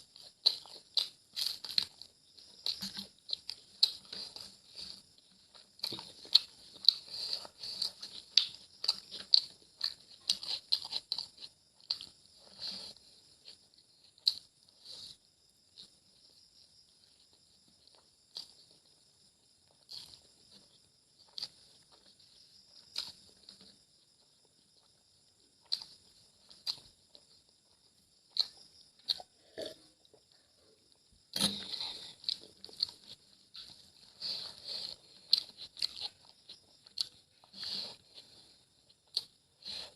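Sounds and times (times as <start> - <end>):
person chewing food: 0.0 - 39.9.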